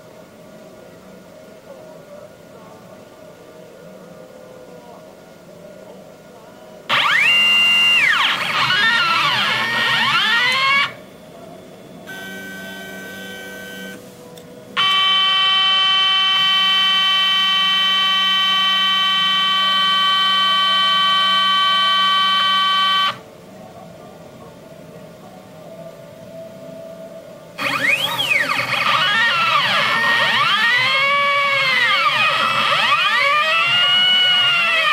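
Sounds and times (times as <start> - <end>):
stepper motors whining: 6.9 - 11.0, 12.1 - 14.0, 14.8 - 23.2, 27.6 - 34.9.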